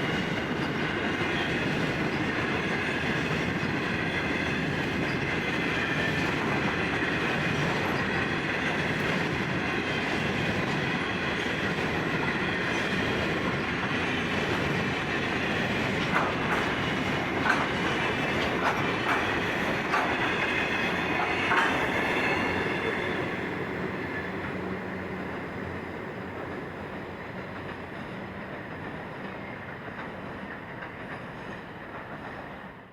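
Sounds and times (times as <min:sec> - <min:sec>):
train wagons rolling past: 0:00.0 - 0:32.9
wheels clicking over rail joints: 0:15.6 - 0:32.4.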